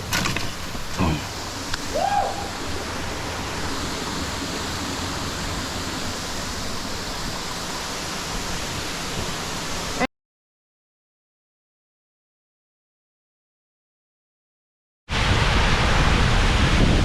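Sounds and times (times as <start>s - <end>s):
waterfall rushing: 0.0s - 10.1s.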